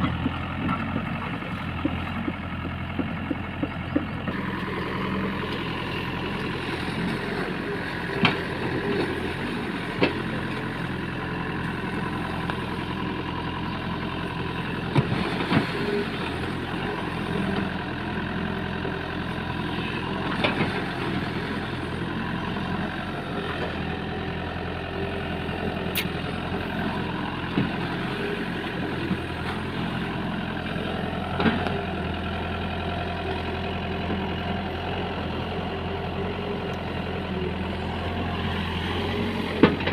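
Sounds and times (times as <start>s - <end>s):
sharp knocks and clanks: 0.0s - 4.4s
diesel engine running: 0.0s - 39.9s.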